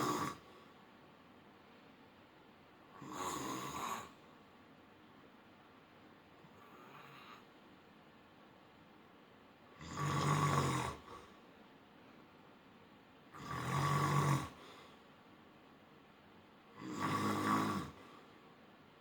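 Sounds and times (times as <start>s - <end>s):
person snoring: 0.0s - 0.5s, 3.0s - 4.2s, 9.8s - 11.2s, 13.4s - 14.6s, 16.8s - 18.0s.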